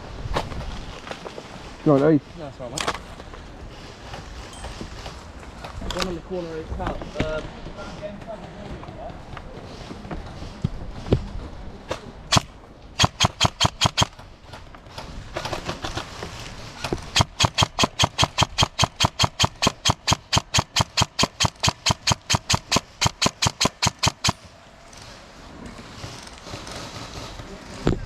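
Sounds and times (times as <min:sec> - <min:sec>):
airsoft gun rapid shots: 0:12.3 - 0:14.2, 0:17.1 - 0:24.4.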